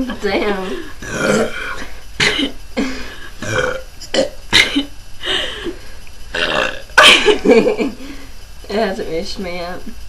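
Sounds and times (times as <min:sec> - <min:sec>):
person burping: 0:01.0 - 0:04.9, 0:06.3 - 0:07.0.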